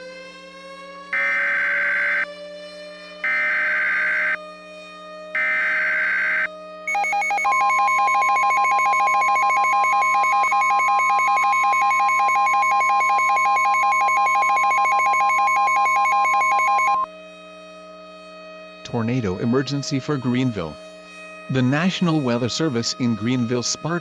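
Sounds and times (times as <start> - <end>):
long steady alert beep: 1.2 - 2.2, 3.2 - 4.4, 5.4 - 17.1
fast pulsing electronic beeps: 5.4 - 17.0.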